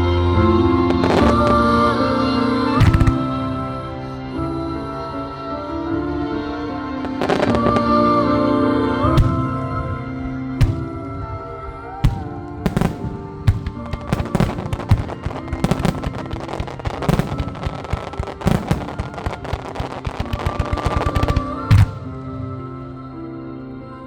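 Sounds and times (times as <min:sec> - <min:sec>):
music: 0:00.0 - 0:24.0
fireworks crackling: 0:00.8 - 0:04.0, 0:07.0 - 0:22.7
fireworks booming: 0:01.0 - 0:01.8, 0:02.7 - 0:03.6, 0:07.1 - 0:08.2, 0:09.0 - 0:22.4.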